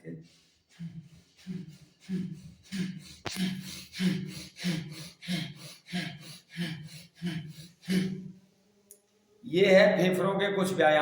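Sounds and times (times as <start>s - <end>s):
man breathing hard: 0.2s - 8.4s.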